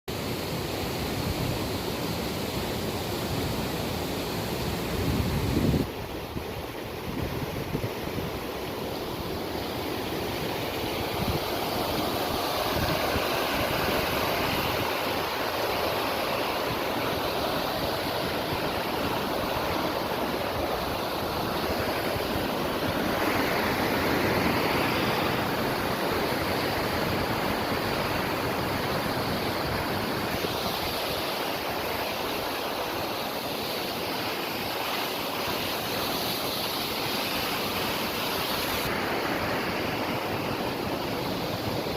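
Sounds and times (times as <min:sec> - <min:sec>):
flowing water rushing: 0:00.1 - 0:41.9
wind buffeting microphone: 0:05.0 - 0:08.6.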